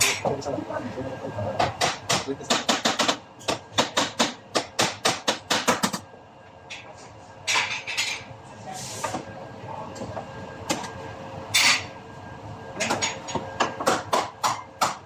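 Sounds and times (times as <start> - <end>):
hammer tapping on sheet metal: 1.6 - 6.0.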